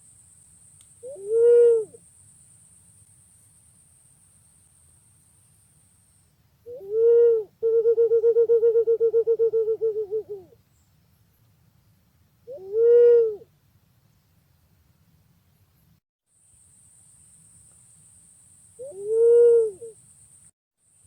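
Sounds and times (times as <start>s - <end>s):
pigeon hooting: 1.0s - 2.0s, 6.7s - 10.6s, 12.5s - 13.5s, 18.8s - 20.0s.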